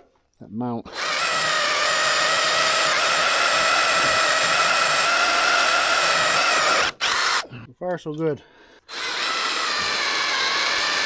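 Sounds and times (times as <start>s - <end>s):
cordless drill boring through steel: 0.9s - 7.5s, 8.9s - 11.0s.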